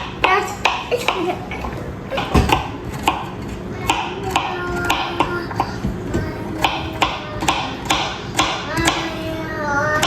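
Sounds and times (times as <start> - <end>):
knife chopping on cutting board: 2.2 - 9.0.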